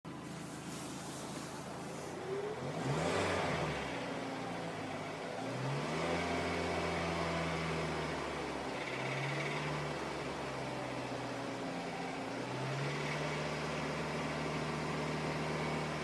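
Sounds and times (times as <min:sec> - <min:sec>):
car engine revving: 0:00.4 - 0:10.6.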